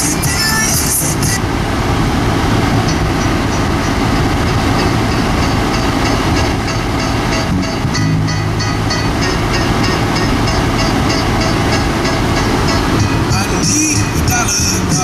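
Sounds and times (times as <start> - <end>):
bass-heavy music from car speakers: 0.0 - 15.0.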